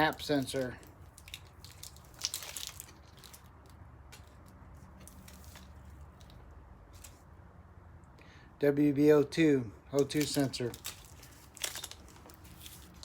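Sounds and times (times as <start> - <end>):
plastic crinkling: 0.0 - 7.2, 10.0 - 13.0
rustling of wiring harness: 0.0 - 7.3, 9.9 - 13.0.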